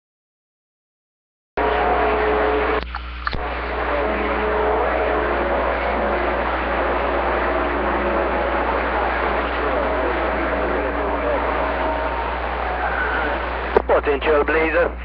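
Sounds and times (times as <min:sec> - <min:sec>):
faint steady radio tones: 0:01.6 - 0:15.0
low hum: 0:01.6 - 0:15.0
radio static and hiss: 0:01.6 - 0:15.0
click: 0:02.8 - 0:03.4.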